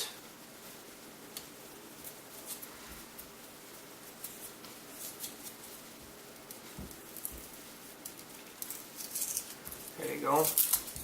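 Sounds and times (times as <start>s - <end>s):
tape crackling as it tears: 7.9s - 11.0s.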